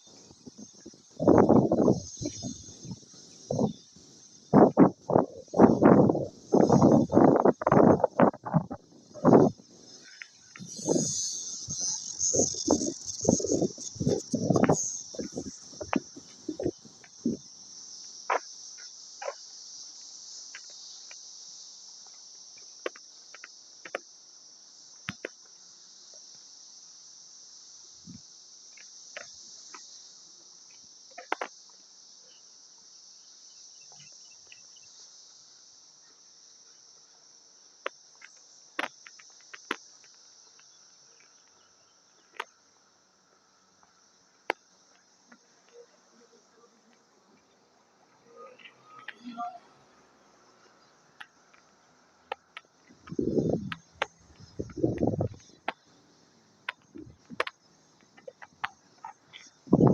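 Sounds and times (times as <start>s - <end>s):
cicadas calling in chorus: 0.0s - 59.9s
sharp taps and clicks: 56.6s - 57.6s.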